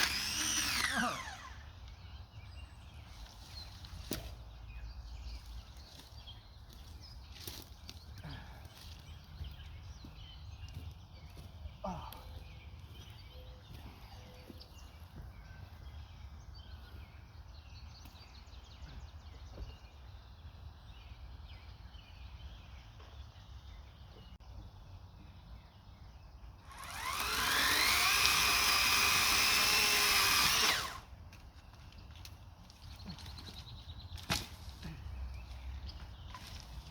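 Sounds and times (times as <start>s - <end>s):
electric chainsaw motor whining: 0.0s - 1.7s, 26.6s - 31.1s.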